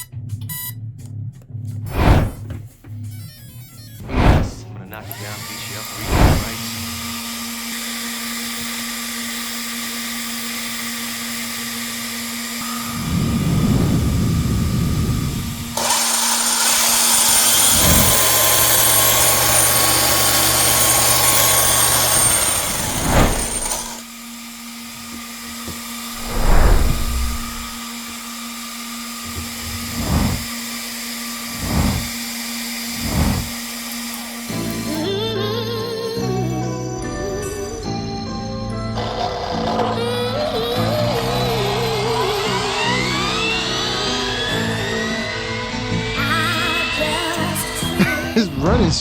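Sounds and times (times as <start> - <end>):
electric motor high-pitched whine: 5.0 - 35.4, 38.9 - 48.0.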